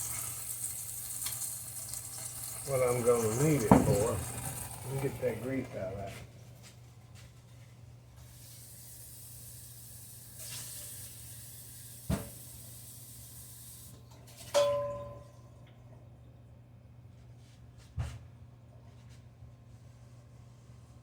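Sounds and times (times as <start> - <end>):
hot grease hissing: 0.0 - 6.1, 8.2 - 13.9
metal clang: 3.6 - 4.6, 14.5 - 15.3
sharp knock: 3.7 - 4.1.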